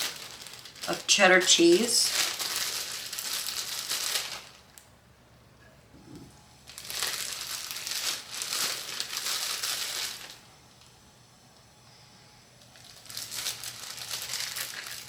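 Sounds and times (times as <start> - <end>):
crinkling plastic packaging: 0.0 - 4.9, 6.6 - 10.8, 12.6 - 15.0.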